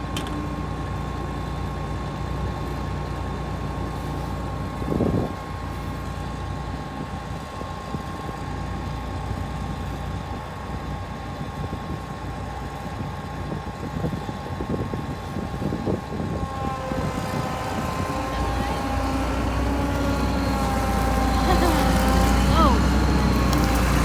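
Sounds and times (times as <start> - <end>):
machinery engine running: 15.6 - 24.0.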